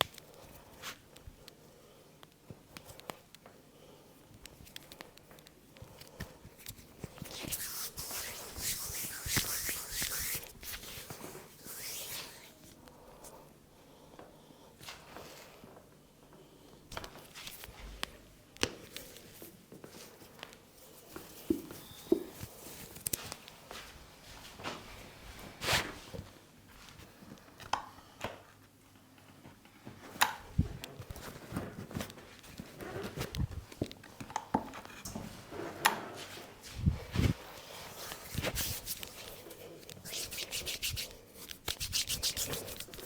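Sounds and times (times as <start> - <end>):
hands rubbing a head: 7.3 - 12.6, 36.3 - 43.0.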